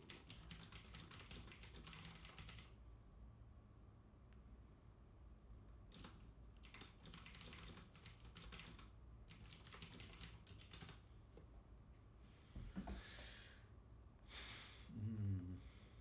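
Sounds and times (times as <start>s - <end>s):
faint keyboard typing: 0.0s - 2.8s, 5.8s - 11.5s.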